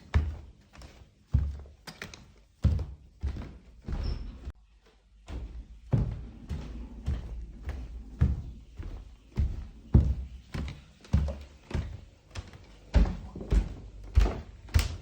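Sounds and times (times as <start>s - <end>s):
thudding footsteps: 0.0s - 15.0s.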